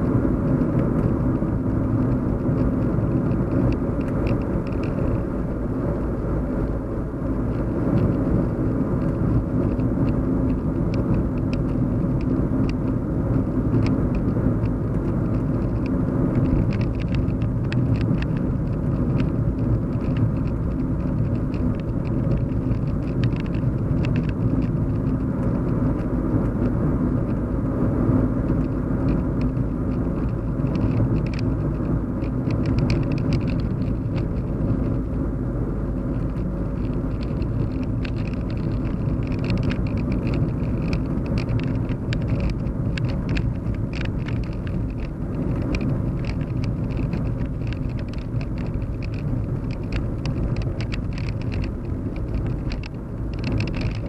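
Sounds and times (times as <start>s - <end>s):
car cabin hum and rumble: 0.0s - 54.0s
faint ticks: 15.3s - 25.5s, 36.1s - 54.0s.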